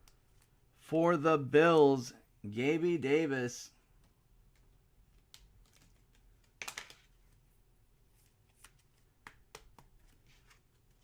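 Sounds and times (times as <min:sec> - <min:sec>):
cards flicking and rustling: 0:00.0 - 0:00.6, 0:03.9 - 0:07.4, 0:08.0 - 0:11.0.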